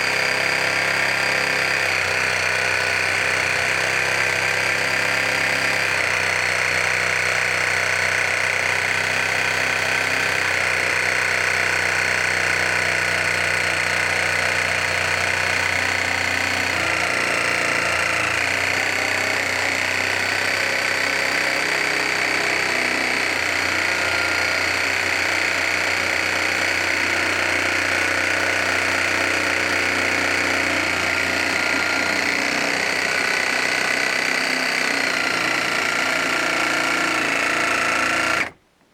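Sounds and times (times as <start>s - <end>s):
reciprocating saw cutting wood: 0.0s - 38.6s.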